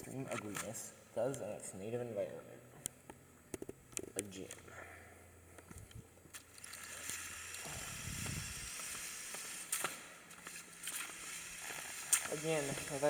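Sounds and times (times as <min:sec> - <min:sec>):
toy car motor whirring: 0:06.6 - 0:09.9, 0:10.9 - 0:13.0.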